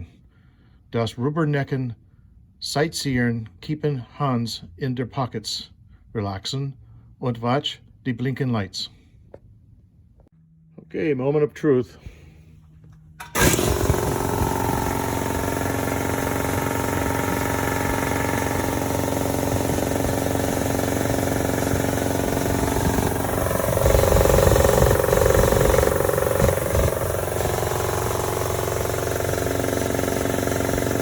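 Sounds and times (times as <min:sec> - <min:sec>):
air compressor running: 0:12.2 - 0:31.0.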